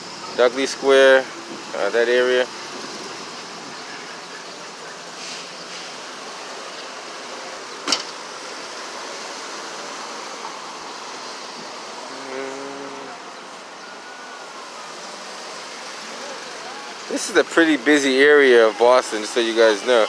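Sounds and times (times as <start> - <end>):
city street traffic: 0.0 - 20.0.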